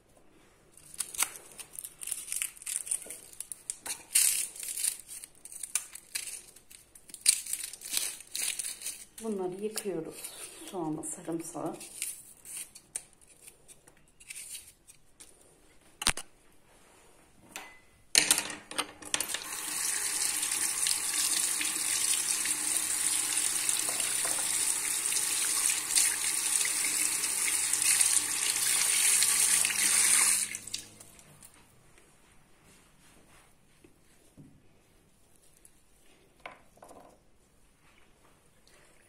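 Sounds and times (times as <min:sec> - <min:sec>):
tap running into sink: 0:23.7 - 0:24.6.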